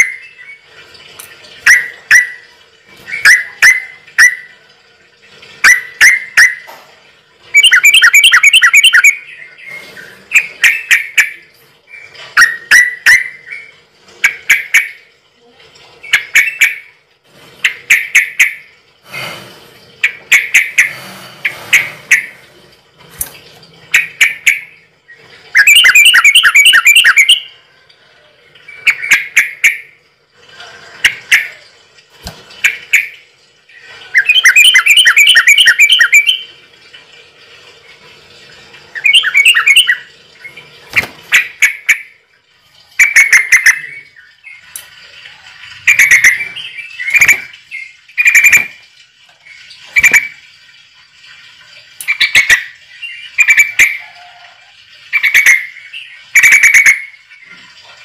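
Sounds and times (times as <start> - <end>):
bird trilling: 7.6 - 9.4, 25.6 - 27.5, 34.2 - 36.5, 39.0 - 40.1, 45.9 - 48.8
bird chirping: 7.6 - 15.0, 23.9 - 27.6, 34.1 - 36.5, 39.0 - 42.2, 45.9 - 48.8.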